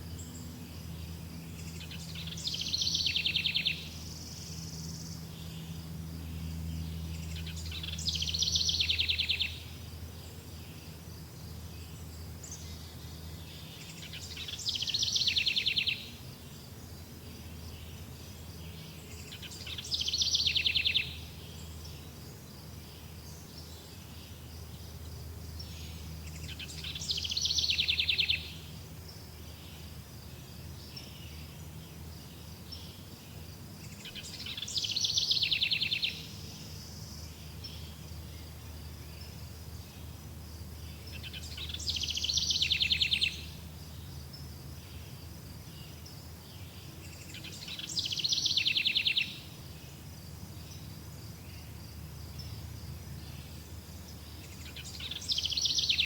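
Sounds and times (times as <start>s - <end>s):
low background hum: 0.0s - 56.0s
songbird trilling: 1.5s - 5.3s, 6.8s - 9.7s, 13.6s - 16.2s, 19.1s - 21.9s, 25.7s - 28.7s, 33.9s - 36.8s, 41.0s - 43.6s, 47.1s - 49.6s, 53.2s - 56.0s.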